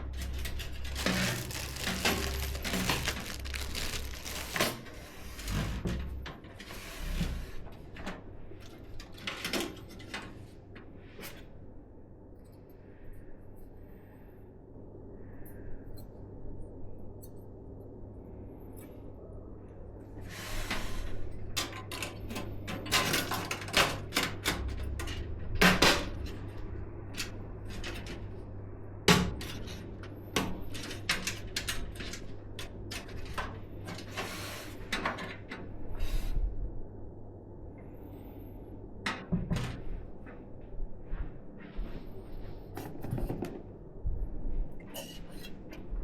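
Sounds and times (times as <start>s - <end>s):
low steady hum: 0.0s - 6.3s
packaging rustling: 0.3s - 4.8s.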